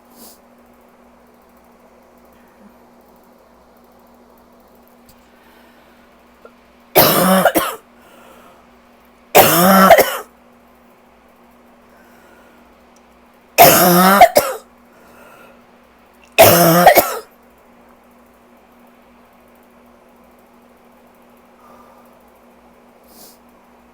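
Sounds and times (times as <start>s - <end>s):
harsh rasping cough: 7.0s - 7.8s, 9.4s - 10.3s, 13.6s - 14.6s, 16.4s - 17.3s.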